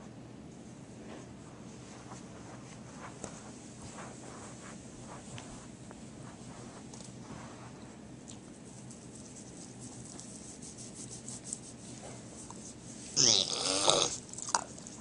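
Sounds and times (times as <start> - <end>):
pig calling: 13.2 - 14.2.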